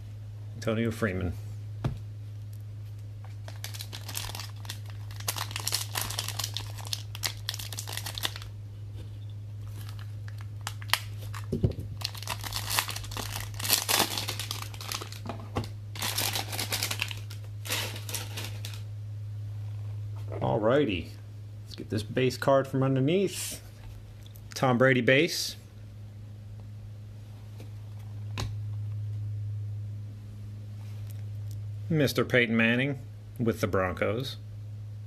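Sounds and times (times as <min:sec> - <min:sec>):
plastic and foil packaging crinkling: 0:03.3 - 0:08.5, 0:09.6 - 0:18.8.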